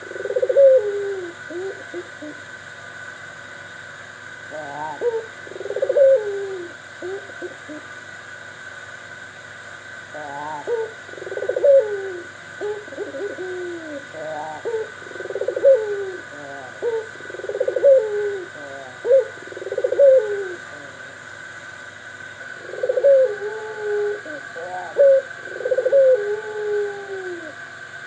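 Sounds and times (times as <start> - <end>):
bird cooing trilled: 0.0 - 2.4, 4.5 - 7.9, 10.1 - 21.1, 22.4 - 27.7.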